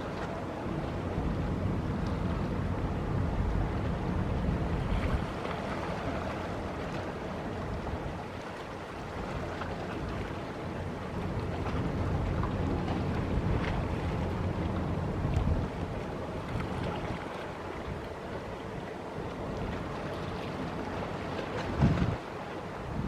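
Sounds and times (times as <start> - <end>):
wind buffeting microphone: 0.0 - 8.3, 21.4 - 23.0.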